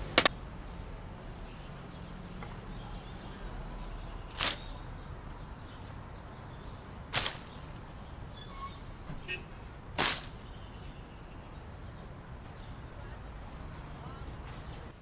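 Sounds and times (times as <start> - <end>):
low background noise: 0.0 - 15.0
brief swishes: 4.3 - 4.7.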